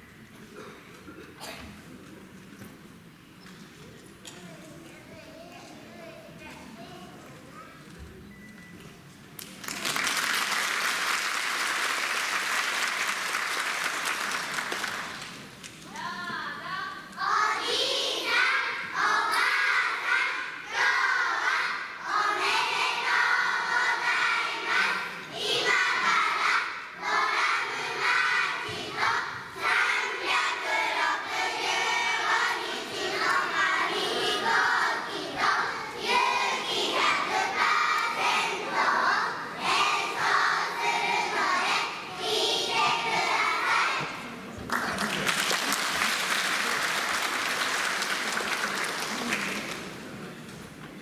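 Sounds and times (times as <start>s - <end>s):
children singing in unison: 17.2s - 44.3s.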